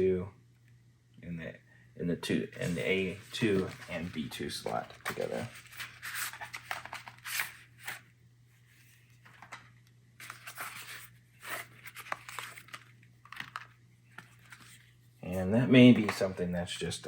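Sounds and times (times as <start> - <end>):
low steady hum: 0.0 - 17.0
rustling of plastic packaging: 2.6 - 8.0.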